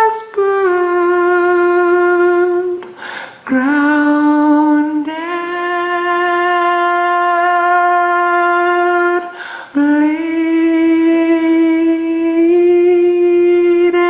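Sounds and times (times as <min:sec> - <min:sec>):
person singing wordless notes: 0:00.0 - 0:14.0
short breath: 0:02.8 - 0:03.4, 0:09.3 - 0:09.8.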